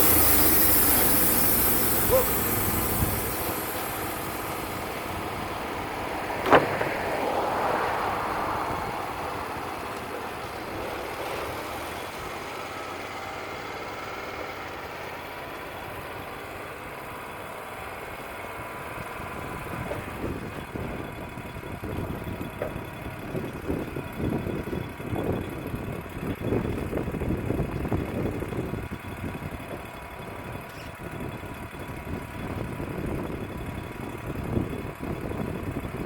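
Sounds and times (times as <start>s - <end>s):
wind buffeting microphone: 0.0s - 10.9s, 19.1s - 36.0s
sawmill running: 0.0s - 36.0s.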